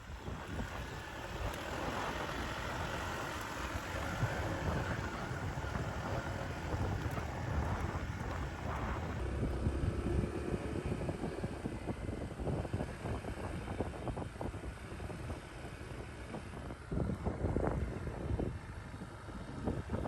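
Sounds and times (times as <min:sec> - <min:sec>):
motorcycle engine rumble: 0:00.0 - 0:14.4
wind buffeting microphone: 0:00.0 - 0:20.0.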